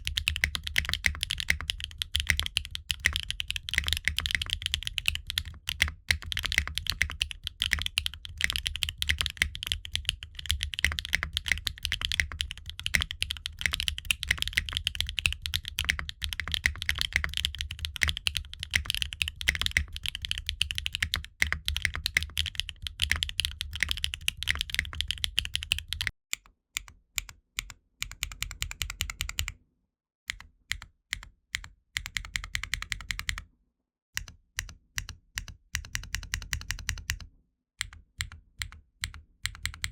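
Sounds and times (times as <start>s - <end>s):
mechanical keyboard typing: 0.0s - 26.1s, 28.0s - 29.5s, 32.0s - 33.4s, 37.8s - 39.9s.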